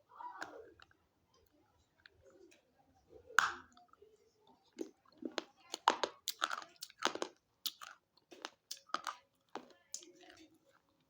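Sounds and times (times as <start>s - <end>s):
gritty crunching between teeth: 5.3s - 9.7s.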